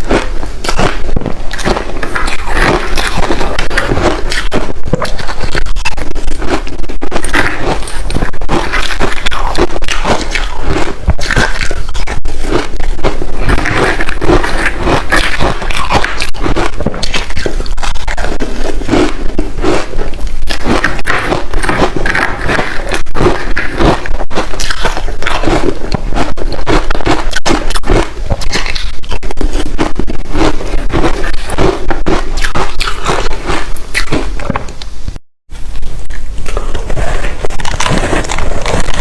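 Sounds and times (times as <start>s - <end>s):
chewing ice crunching: 0.0s - 34.7s, 35.8s - 39.0s.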